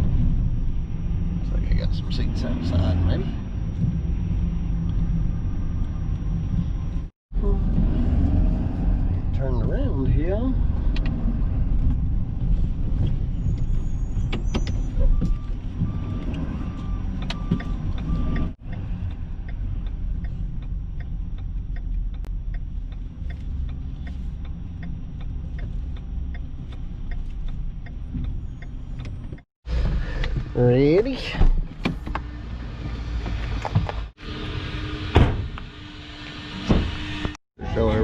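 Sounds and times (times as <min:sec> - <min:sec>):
truck engine and road rumble: 0:00.0 - 0:38.0
light regular ticking: 0:17.2 - 0:29.5.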